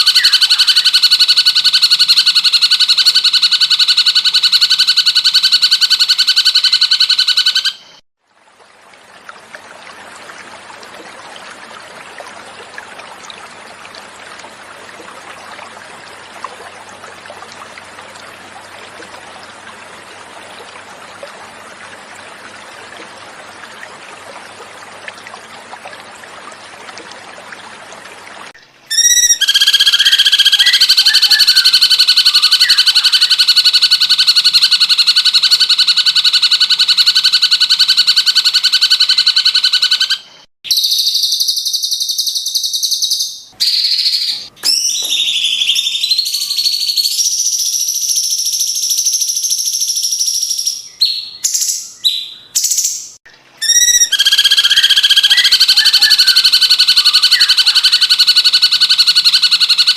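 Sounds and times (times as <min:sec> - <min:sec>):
bird call fast-repeating: 0:00.0 - 0:08.0, 0:28.9 - 0:53.0, 0:53.6 - 0:59.9
running water: 0:08.2 - 0:35.2.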